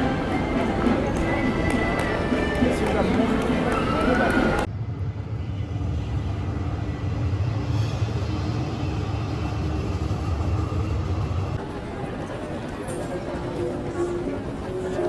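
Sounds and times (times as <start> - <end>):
background music: 0.0 - 4.7
low rumble: 4.7 - 11.6.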